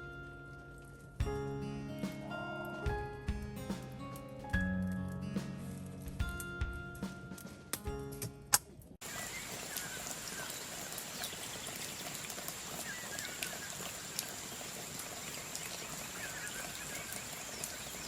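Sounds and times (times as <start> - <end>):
small bird chirping: 9.1 - 18.0.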